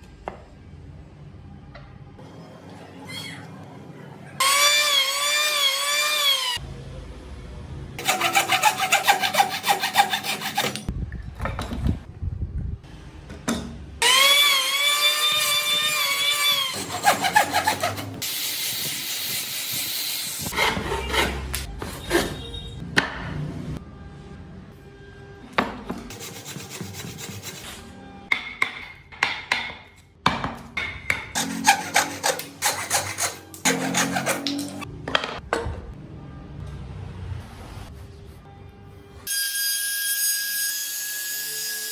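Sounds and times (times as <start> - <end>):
sawing or rasping wood: 8.0 - 10.9, 16.7 - 19.4, 26.1 - 27.7, 31.4 - 34.8.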